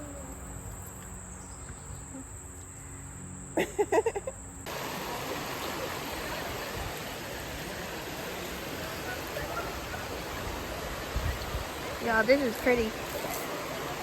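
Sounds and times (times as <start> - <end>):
waterfall rushing: 4.7 - 14.0.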